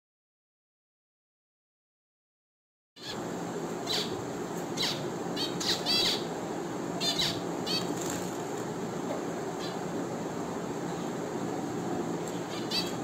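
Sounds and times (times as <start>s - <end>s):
finches chirping: 3.0s - 6.4s, 7.0s - 8.6s, 9.5s - 10.0s, 12.2s - 13.0s.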